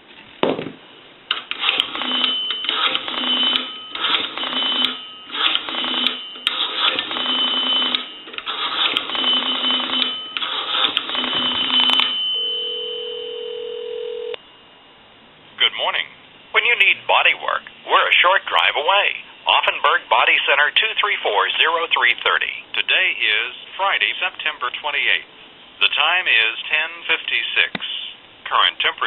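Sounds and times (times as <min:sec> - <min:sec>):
rotary dial whirring and clicking: 0:01.3 - 0:12.2
telephone ringback tone: 0:01.6 - 0:14.4.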